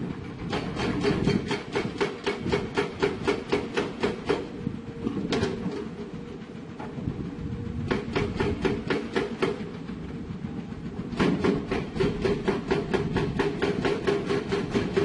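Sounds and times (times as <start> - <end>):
hydraulic rock hammer pounding rock: 0.4 - 4.5, 7.9 - 9.8, 11.1 - 15.0.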